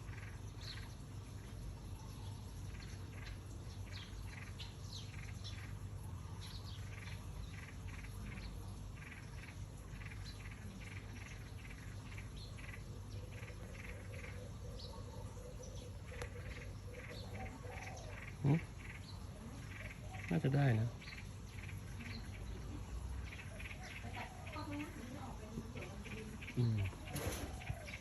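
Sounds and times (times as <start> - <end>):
small birds chirping: 0.0 - 28.0
steady low hum: 0.0 - 28.0.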